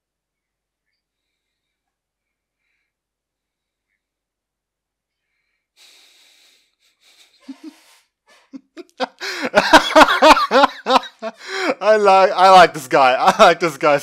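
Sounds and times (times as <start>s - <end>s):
man laughing wheezily: 5.8s - 11.9s.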